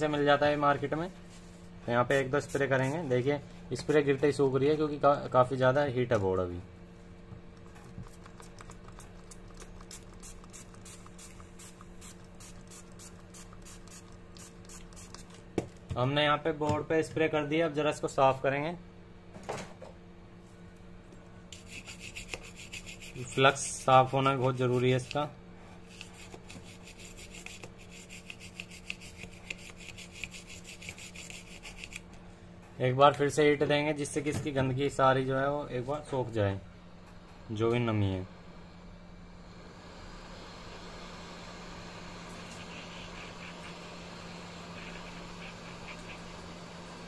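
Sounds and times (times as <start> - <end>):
steady low hum: 0.0 - 47.0
brush scrubbing circuit board: 21.6 - 24.9, 25.9 - 32.0, 42.4 - 43.9, 44.7 - 46.4.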